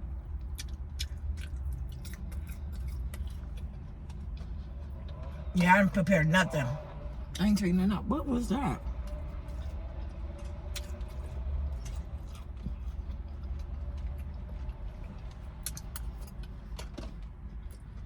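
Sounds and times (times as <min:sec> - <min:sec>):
person eating: 0:00.4 - 0:04.5, 0:10.7 - 0:13.0.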